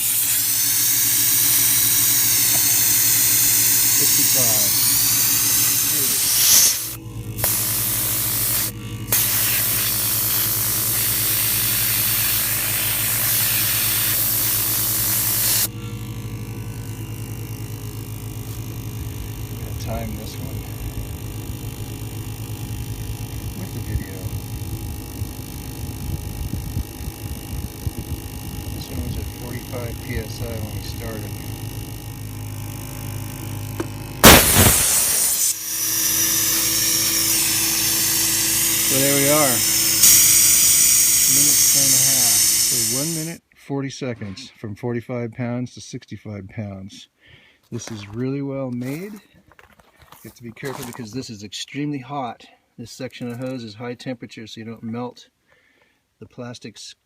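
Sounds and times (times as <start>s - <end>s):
hissing air: 0.0s - 15.8s, 34.2s - 43.4s
air compressor pulsing: 0.0s - 43.4s
rush of escaping air: 34.2s - 43.3s.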